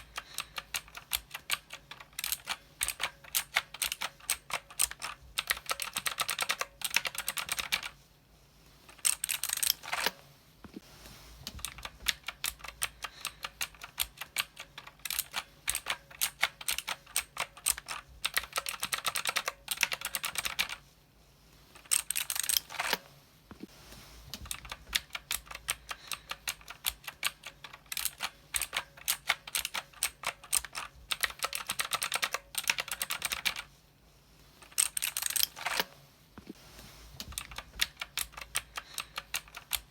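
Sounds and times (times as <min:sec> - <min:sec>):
mechanical keyboard typing: 0:00.0 - 0:08.0, 0:09.0 - 0:10.2, 0:11.5 - 0:20.8, 0:21.8 - 0:23.0, 0:24.4 - 0:33.7, 0:34.6 - 0:35.9, 0:37.2 - 0:39.9.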